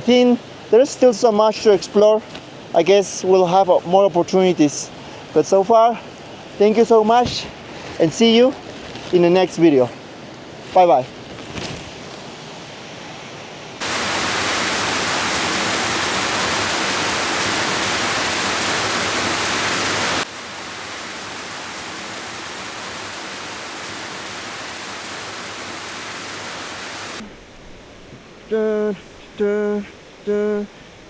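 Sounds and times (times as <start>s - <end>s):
waterfall rushing: 13.8s - 27.3s.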